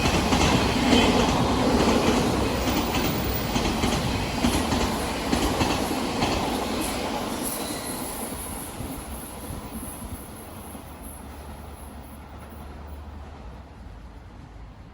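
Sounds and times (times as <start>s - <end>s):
train wheel clicks: 0.0s - 7.0s
electric train rumbling past: 0.0s - 14.9s.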